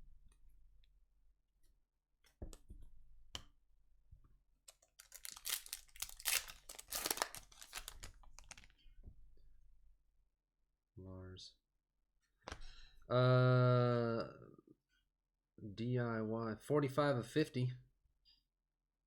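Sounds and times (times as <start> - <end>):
foil wrapper crinkling and tearing: 4.7 - 8.8.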